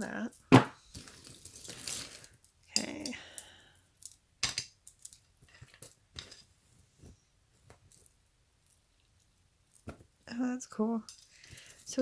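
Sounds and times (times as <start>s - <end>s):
beads and metal pieces clinking: 0.0s - 6.5s, 11.0s - 12.0s.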